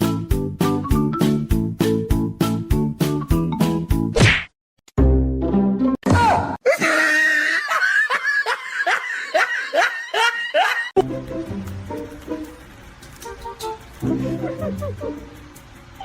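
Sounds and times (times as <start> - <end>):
background music: 0.0 - 4.2, 5.0 - 6.0, 11.0 - 16.0
quick rhythmic laughter: 6.6 - 11.0, 14.1 - 16.0.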